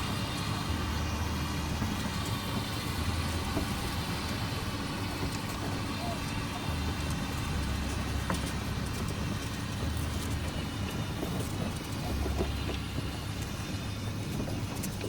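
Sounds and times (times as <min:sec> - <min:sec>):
tractor diesel engine droning: 0:00.0 - 0:15.0.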